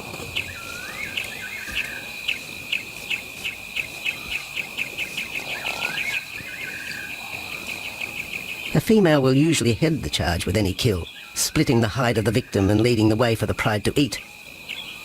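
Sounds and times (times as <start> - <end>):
high insect drone: 0.0 - 15.0
swooping bird call: 0.2 - 8.8.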